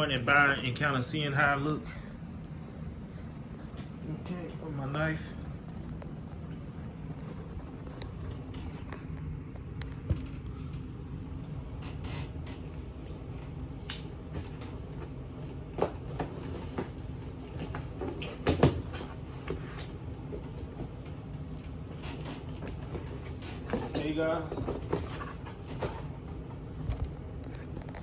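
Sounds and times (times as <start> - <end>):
steady low hum: 0.0 - 28.0
cardboard flaps handled: 13.9 - 21.2, 21.8 - 26.5.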